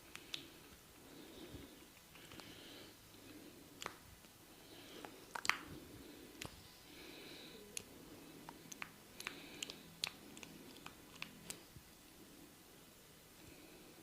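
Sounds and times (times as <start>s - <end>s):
small crackling clicks: 0.0s - 0.8s, 5.0s - 5.7s, 7.7s - 11.6s
hands rubbing skin and hair: 7.8s - 11.7s.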